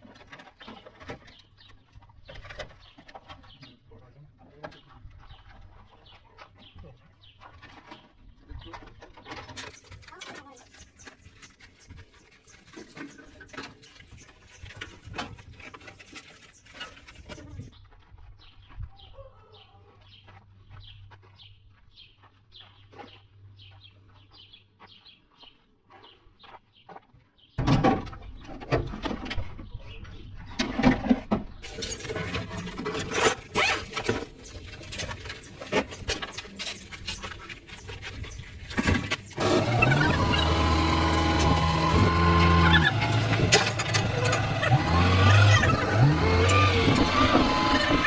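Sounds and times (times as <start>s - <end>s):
small bird chirping: 4.8s - 15.1s
loud clattering and knocking: 38.6s - 48.0s.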